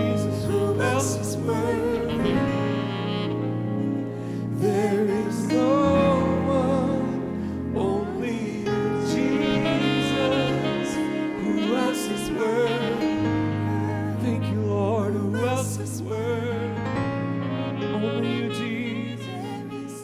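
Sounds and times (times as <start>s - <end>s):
worship band music: 0.0s - 20.0s.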